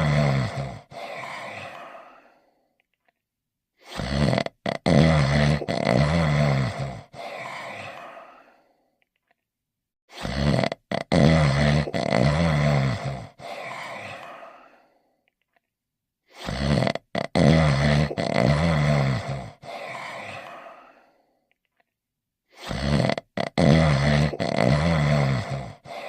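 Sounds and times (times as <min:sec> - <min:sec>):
cartoon dog snoring: 0:00.0 - 0:02.4, 0:03.8 - 0:08.6, 0:10.1 - 0:14.8, 0:16.2 - 0:21.1, 0:22.5 - 0:26.0.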